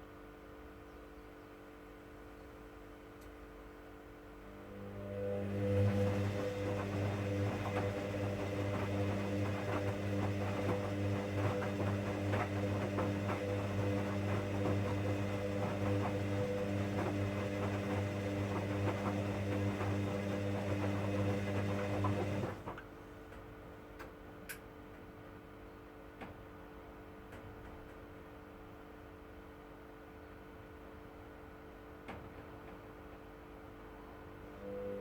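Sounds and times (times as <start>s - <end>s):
washing machine motor hum: 4.4s - 23.1s.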